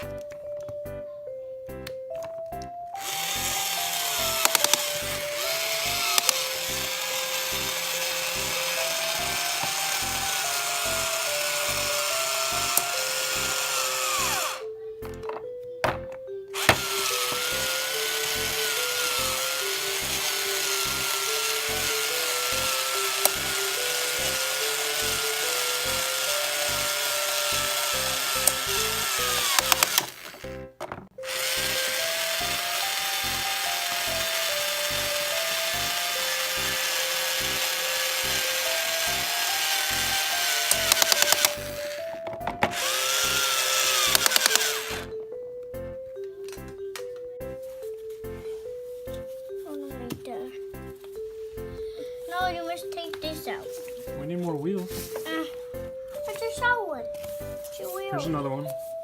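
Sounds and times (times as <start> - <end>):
simple single-note melody: 0.0 - 29.8, 44.9 - 59.0.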